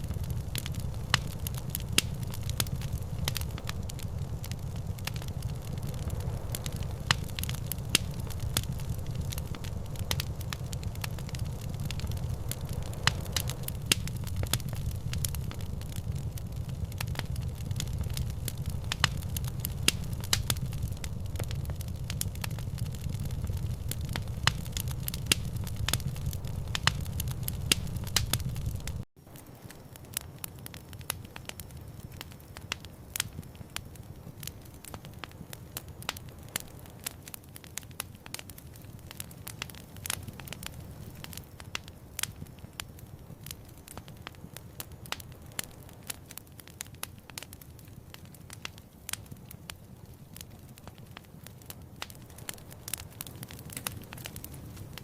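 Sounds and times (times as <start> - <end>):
low rumble: 0.0 - 29.0
wood fire crackling and popping: 0.0 - 55.0.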